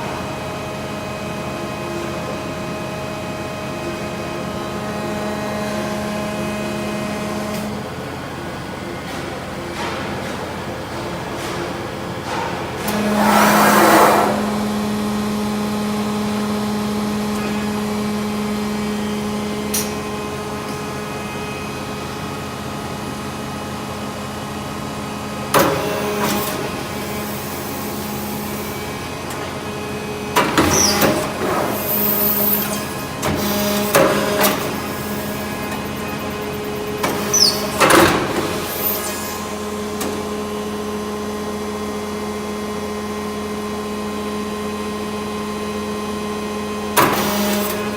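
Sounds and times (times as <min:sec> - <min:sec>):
hydraulic power unit humming: 0:00.0 - 0:47.9
machine clanking and hissing: 0:09.0 - 0:15.0, 0:30.4 - 0:40.2, 0:47.0 - 0:47.9.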